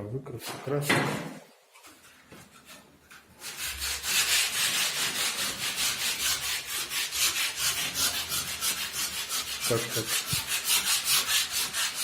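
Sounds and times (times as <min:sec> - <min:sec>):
hand sanding a wall: 0:03.4 - 0:12.0.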